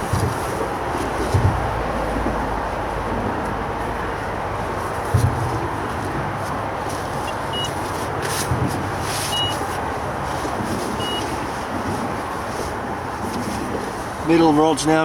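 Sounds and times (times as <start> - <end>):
traffic noise: 0.0 - 15.0
short high beeps: 7.3 - 7.8, 9.3 - 9.6, 11.0 - 11.3.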